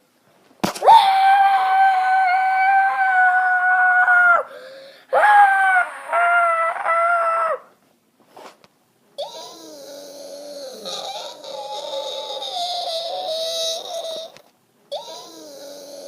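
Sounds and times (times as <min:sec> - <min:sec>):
high-pitched vocal shriek: 0:09.2 - 0:16.0.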